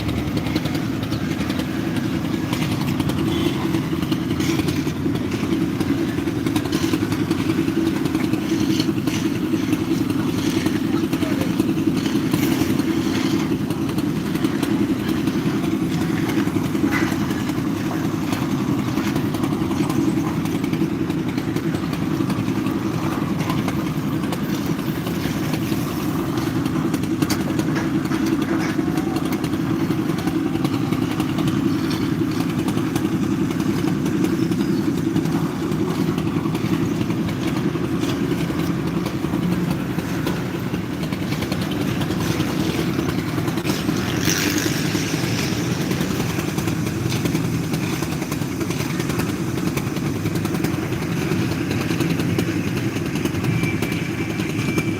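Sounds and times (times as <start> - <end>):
engine running steadily: 0.0 - 54.9.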